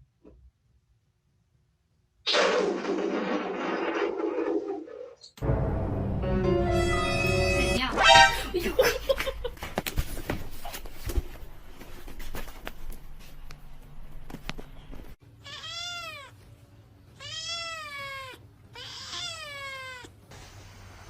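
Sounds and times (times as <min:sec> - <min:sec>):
cat meowing: 0:15.4 - 0:16.4, 0:17.2 - 0:20.1.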